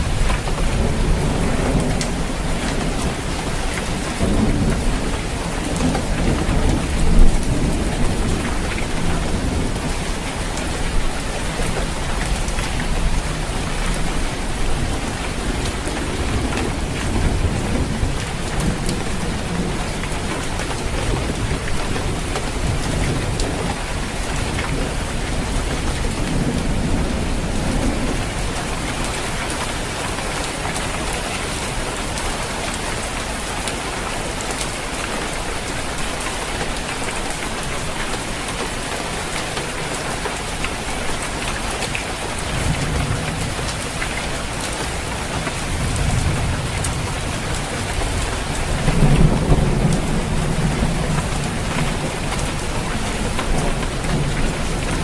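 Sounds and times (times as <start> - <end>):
thunder rumbling: 0.0 - 30.2, 42.4 - 55.0
heavy rain on a roof: 0.0 - 55.0.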